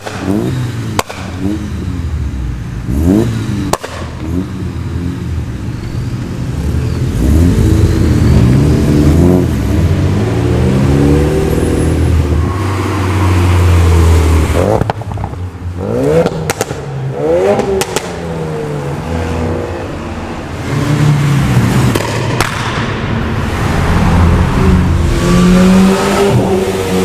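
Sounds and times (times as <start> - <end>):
exhaust pops and crackles: 0.0 - 1.6, 3.6 - 4.5, 14.6 - 16.9, 17.5 - 18.2, 21.8 - 23.2
car engines revving: 0.0 - 27.0.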